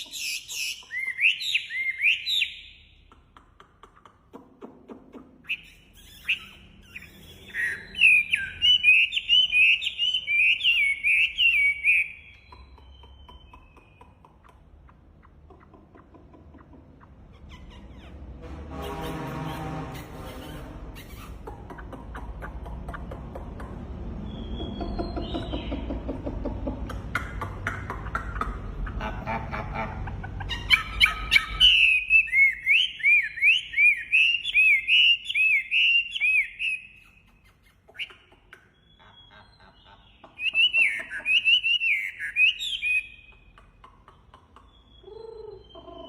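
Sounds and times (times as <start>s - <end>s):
songbird singing: 0.0s - 3.1s, 5.4s - 18.1s, 21.1s - 27.0s, 30.4s - 43.6s, 44.4s - 46.0s.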